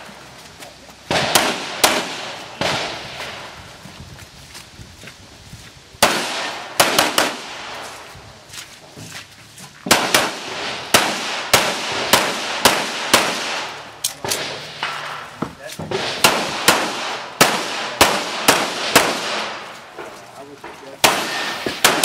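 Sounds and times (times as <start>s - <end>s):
pistol shots: 1.1s - 3.3s, 6.0s - 7.8s, 9.9s - 15.2s, 15.9s - 20.2s, 21.0s - 22.0s.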